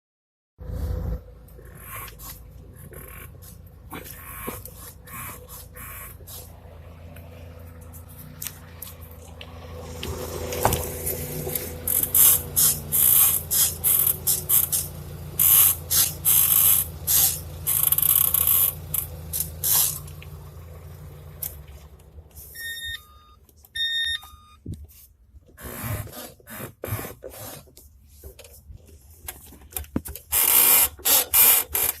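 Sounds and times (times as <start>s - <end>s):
clutch pedal squeaking: 1.5s - 6.6s, 9.0s - 20.8s, 29.4s - 32.0s
electronic beeps: 22.5s - 24.6s.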